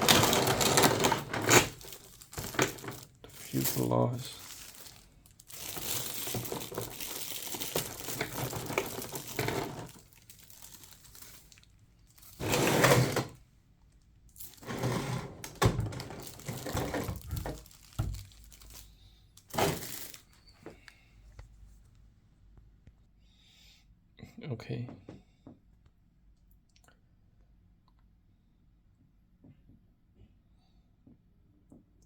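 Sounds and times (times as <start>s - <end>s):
packaging rustling and crinkling: 0.0s - 13.4s, 14.3s - 20.7s.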